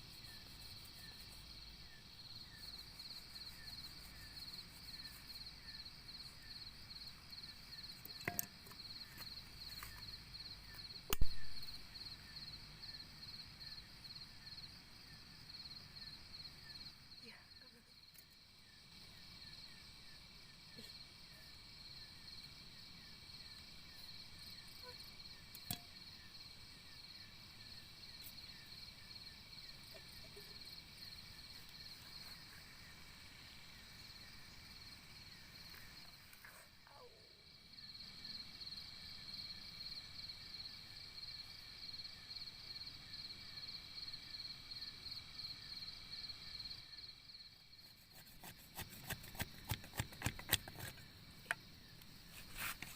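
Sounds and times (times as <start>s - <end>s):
insects chirping: 0.0s - 52.9s
sharp click: 11.1s - 11.4s.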